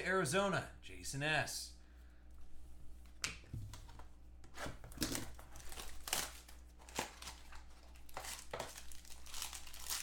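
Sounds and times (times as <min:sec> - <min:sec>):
card pack wrapper crinkling: 0:04.9 - 0:10.0.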